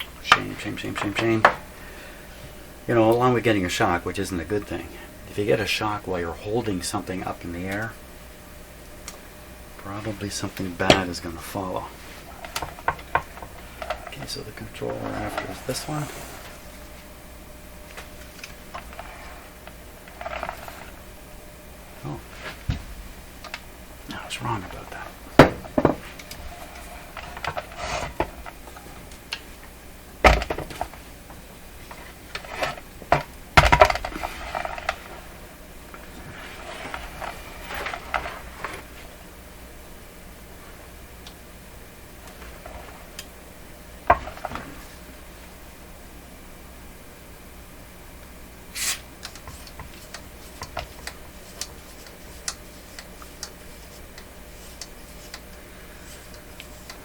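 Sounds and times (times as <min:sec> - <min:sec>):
low electrical hum: 0:00.0 - 0:57.0
hard objects knocking on workbench: 0:25.4 - 0:26.1
short scrape: 0:48.7 - 0:49.1.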